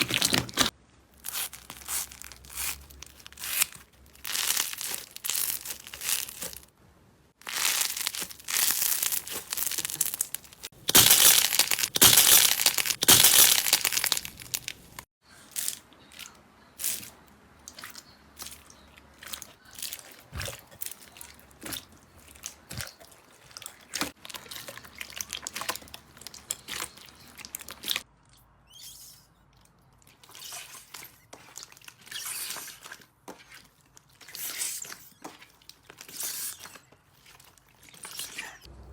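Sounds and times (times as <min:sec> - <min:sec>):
slime squeezed crackling: 0:00.0 - 0:06.7, 0:07.4 - 0:15.0, 0:15.6 - 0:28.0.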